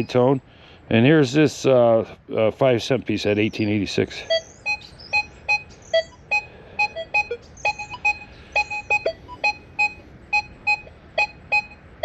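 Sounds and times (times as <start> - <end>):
metal detector two-tone beeps: 4.2 - 12.0.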